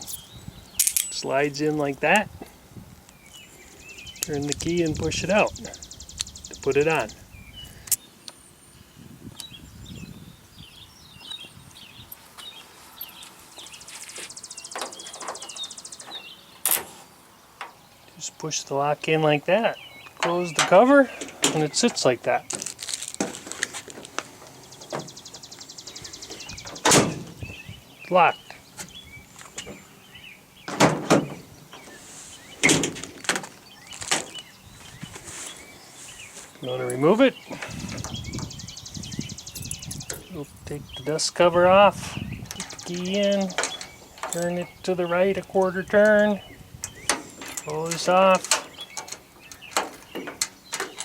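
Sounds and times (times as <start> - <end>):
birds chirping and singing: 0.0 - 51.0
heavy metal tailgate clunks: 26.6 - 27.6, 30.6 - 31.9, 32.5 - 34.4, 46.9 - 51.0.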